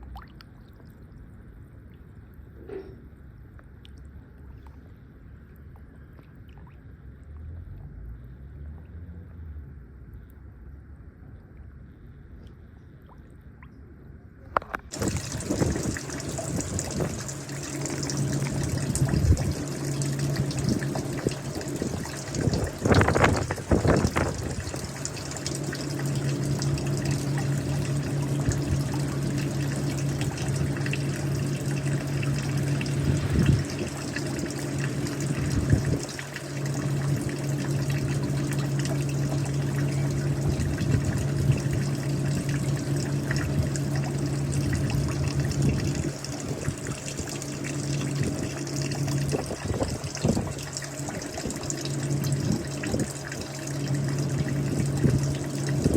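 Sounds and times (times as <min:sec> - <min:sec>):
low hum: 0:00.0 - 0:55.9
water running and trickling: 0:14.9 - 0:55.9.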